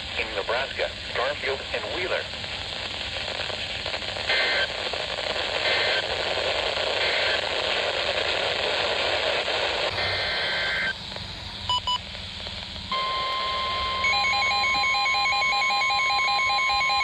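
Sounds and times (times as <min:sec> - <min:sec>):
radio static hiss: 0:00.0 - 0:15.8
screeching data bursts: 0:09.9 - 0:12.1
quick beeps: 0:11.7 - 0:12.0, 0:12.9 - 0:17.0.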